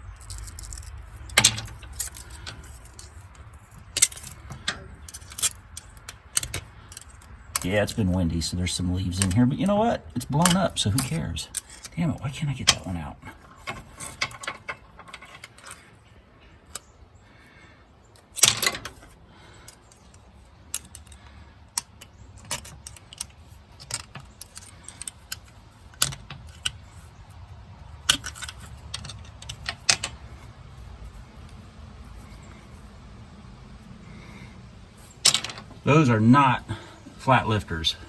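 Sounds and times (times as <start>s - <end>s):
metal-on-metal clinks and clacks: 0.1s - 7.7s, 28.0s - 30.5s.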